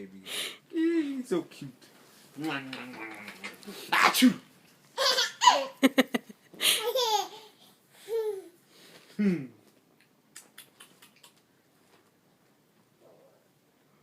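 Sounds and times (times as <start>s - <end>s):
baby laughing and babbling: 5.0s - 5.8s, 6.7s - 8.6s.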